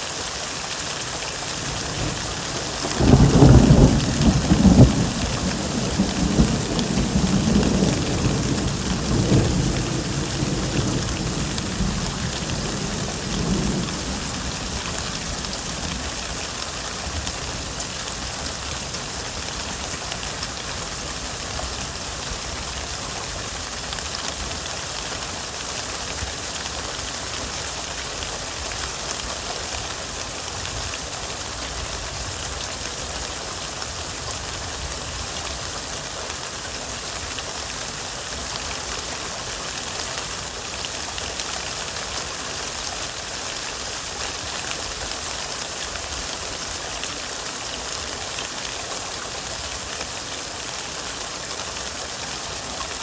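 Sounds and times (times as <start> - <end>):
heavy rain falling: 0.0 - 53.0
low thunder rumble: 1.7 - 16.6.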